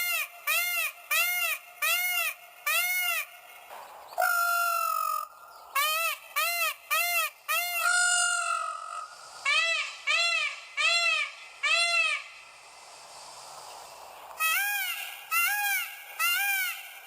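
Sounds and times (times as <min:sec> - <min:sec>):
peacock honking calls: 0:04.2 - 0:12.3.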